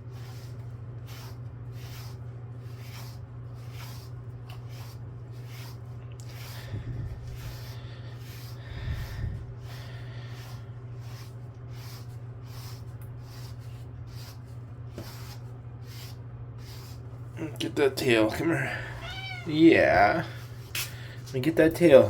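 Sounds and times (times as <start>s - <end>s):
brush swishing through fur: 0.0s - 17.1s
steady low hum: 0.0s - 22.0s.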